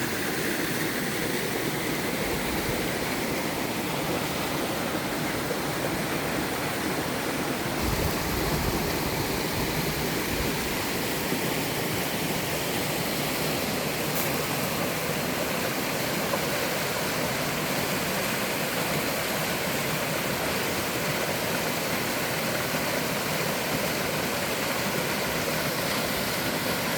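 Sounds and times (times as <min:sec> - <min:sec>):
waterfall rushing into stream: 0:00.0 - 0:26.9.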